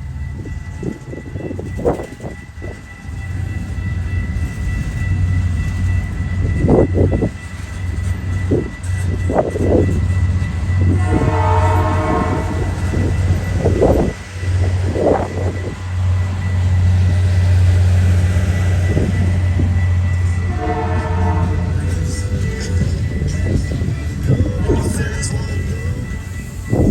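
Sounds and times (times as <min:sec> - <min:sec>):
train rumbling past: 0:00.0 - 0:26.9
locomotive horn: 0:10.8 - 0:13.8, 0:20.2 - 0:22.2, 0:24.6 - 0:25.3.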